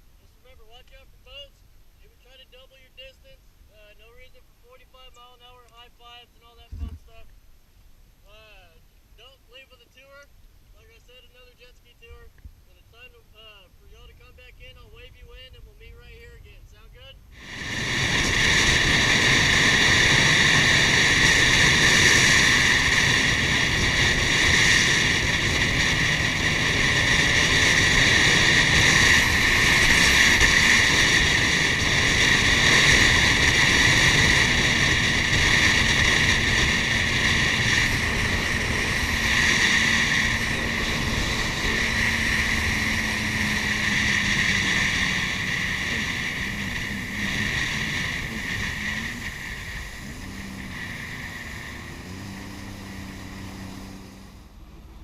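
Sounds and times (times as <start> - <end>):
water rushing hiss: 17.4 - 54.4
jet ski engine whining: 17.4 - 55.0.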